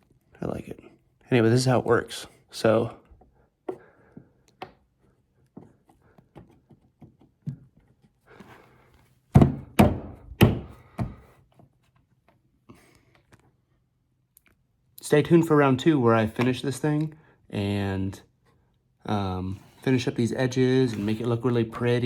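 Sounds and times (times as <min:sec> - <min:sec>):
loud thunks of wooden board: 0:09.3 - 0:11.2.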